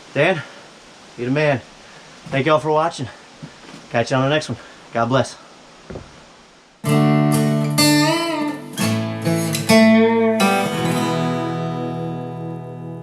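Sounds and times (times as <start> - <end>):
acoustic guitar strumming and plucking: 6.8 - 13.0.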